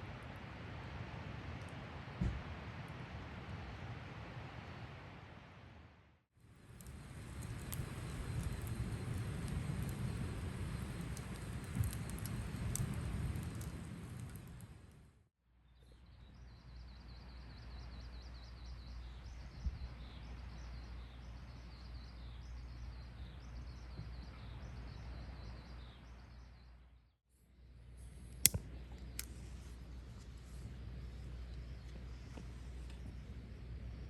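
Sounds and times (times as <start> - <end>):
low outdoor background noise: 0.0 - 34.0.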